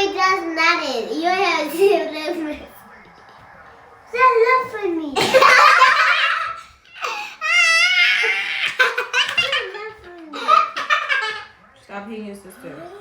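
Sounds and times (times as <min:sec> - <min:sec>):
girls shrieking and laughing: 0:05.2 - 0:11.5.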